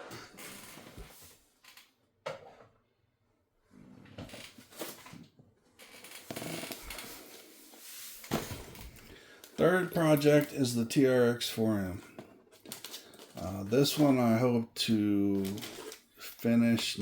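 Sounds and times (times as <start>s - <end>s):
objects shuffled and moved: 6.2s - 10.5s, 11.9s - 14.4s, 15.2s - 17.0s.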